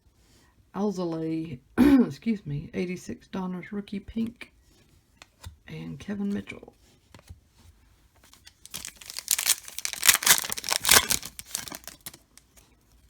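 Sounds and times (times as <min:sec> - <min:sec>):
wrapper tearing and crinkling: 0:08.3 - 0:12.6.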